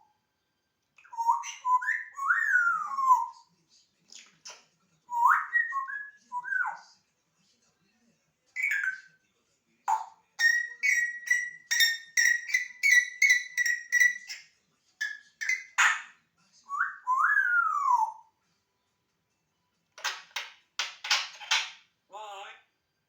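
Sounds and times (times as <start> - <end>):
parrot whistling and chirping: 1.0 - 3.4, 4.2 - 6.8, 8.6 - 9.1, 9.9 - 14.4, 15.0 - 16.1, 16.7 - 18.3.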